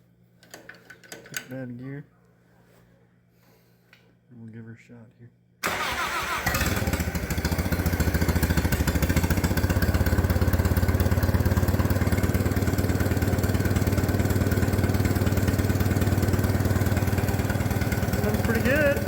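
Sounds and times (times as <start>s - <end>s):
tractor engine running: 5.6s - 19.0s.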